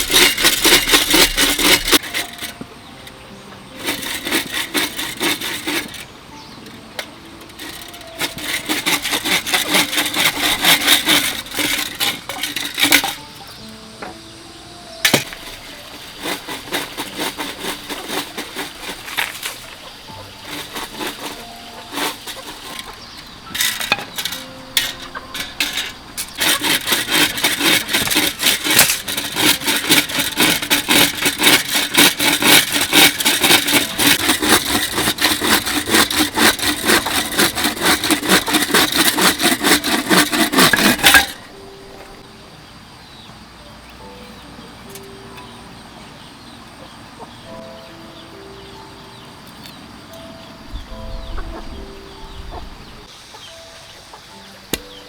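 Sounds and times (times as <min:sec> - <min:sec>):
handsaw cutting bamboo: 0:00.0 - 0:02.6, 0:03.7 - 0:06.1, 0:07.5 - 0:13.3, 0:15.1 - 0:41.5.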